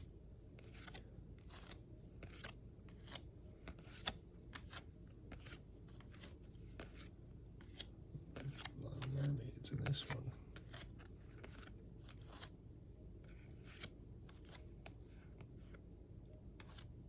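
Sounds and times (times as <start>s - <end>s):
trading cards clicking and rustling: 0.6s - 12.5s.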